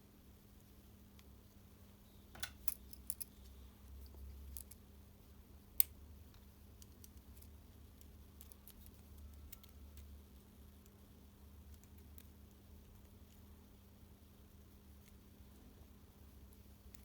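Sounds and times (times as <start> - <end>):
tools clicking and tapping: 2.3 - 3.4.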